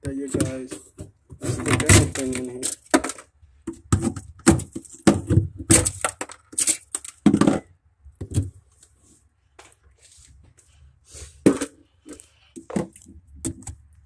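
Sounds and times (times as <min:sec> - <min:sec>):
ice cracking and knocking: 0:01.4 - 0:07.7.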